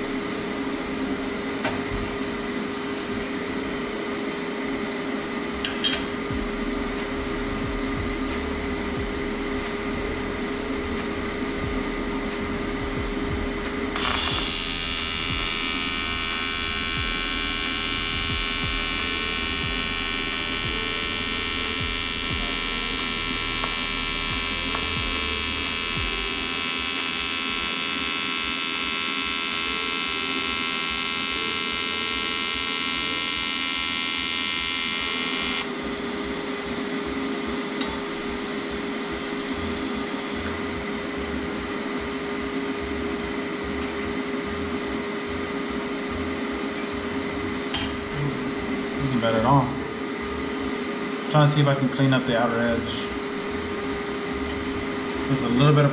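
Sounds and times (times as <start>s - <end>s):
constant low hum: 0.0s - 55.9s
welding arc buzzing: 5.6s - 41.4s.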